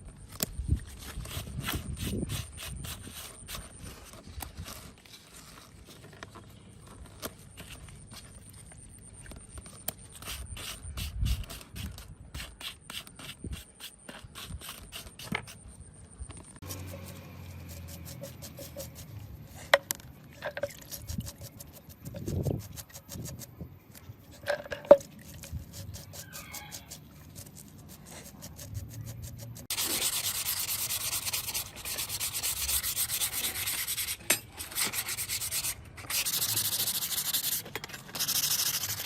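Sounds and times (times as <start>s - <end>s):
scraping metal bicycle parts: 16.6s - 39.0s.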